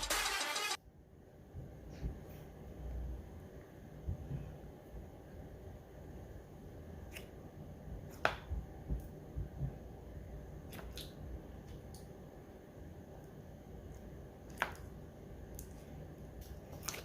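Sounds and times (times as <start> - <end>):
slime squishing: 13.9 - 17.0.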